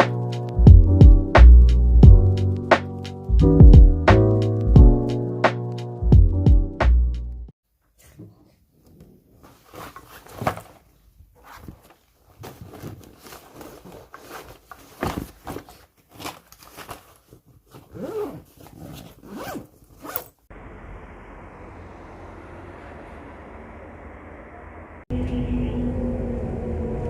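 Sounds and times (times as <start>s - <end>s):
scraping and rustling handling noise: 8.0s - 20.4s.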